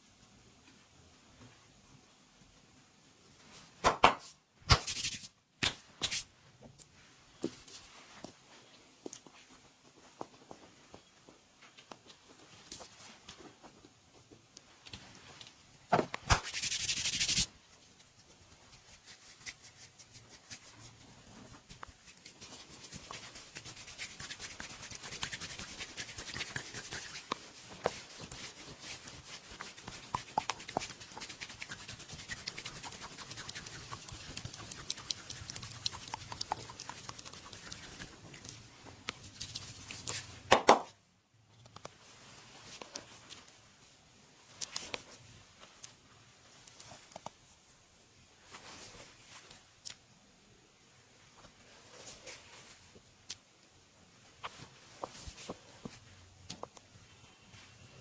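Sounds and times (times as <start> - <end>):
hands rubbing skin: 16.3 - 40.3.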